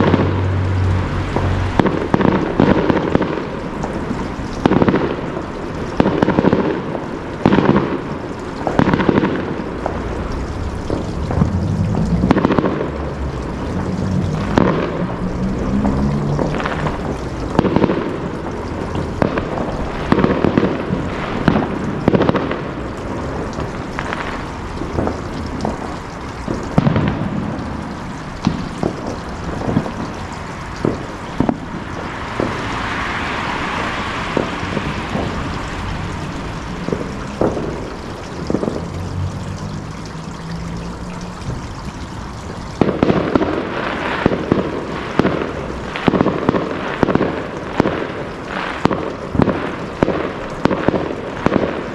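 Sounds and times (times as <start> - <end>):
fireworks bangs and pops: 0.0 - 39.6, 42.4 - 51.9
fireworks crackling hiss: 0.0 - 39.9, 42.2 - 51.9.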